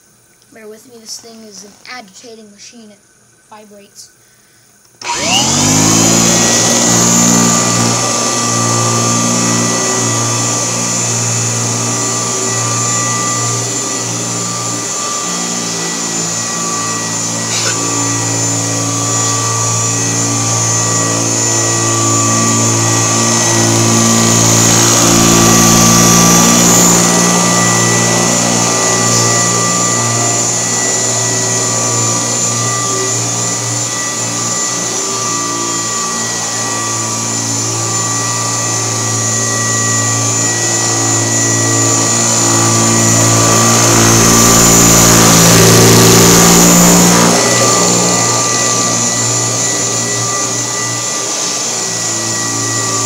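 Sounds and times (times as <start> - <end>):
vacuum cleaner running: 0.0 - 2.4, 4.8 - 53.0.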